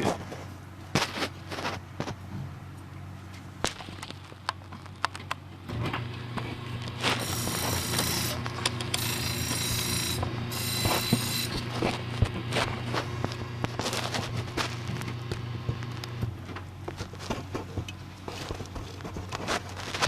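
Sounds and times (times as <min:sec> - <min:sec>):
motor humming: 0:03.3 - 0:17.0
small clicks and knocks: 0:03.6 - 0:05.4
high hissing grind of sharpening: 0:07.2 - 0:11.6.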